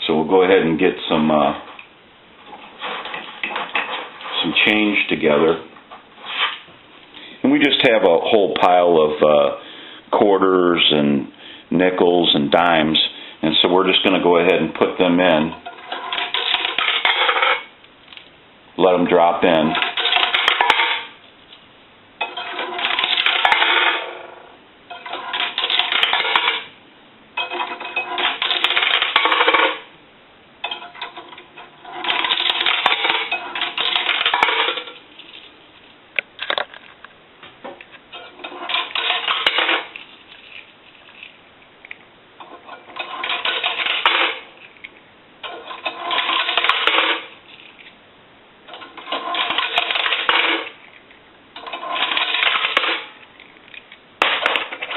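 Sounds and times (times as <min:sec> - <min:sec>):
coins clattering into payphone: 0:15.5 - 0:17.6, 0:19.6 - 0:21.2, 0:22.2 - 0:24.2, 0:24.9 - 0:26.7, 0:27.4 - 0:29.9, 0:30.6 - 0:35.0, 0:38.1 - 0:40.0, 0:42.4 - 0:44.5, 0:45.4 - 0:47.4, 0:48.7 - 0:50.8, 0:51.6 - 0:53.2.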